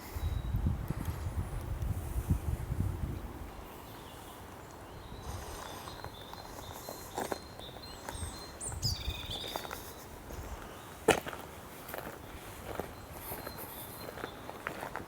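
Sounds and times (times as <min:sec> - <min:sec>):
birds singing in thin whistles: 0:03.8 - 0:10.1
footsteps on an outdoor path: 0:04.5 - 0:15.0.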